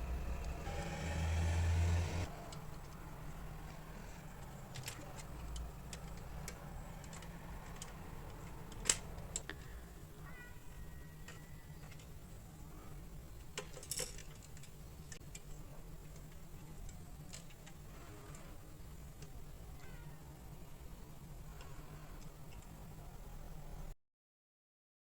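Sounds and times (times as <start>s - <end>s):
steady low hum: 0.0s - 2.3s.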